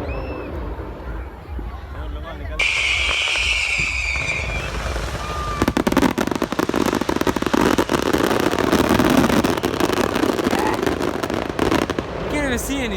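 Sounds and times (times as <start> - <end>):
fireworks crackling pops: 2.6 - 12.9.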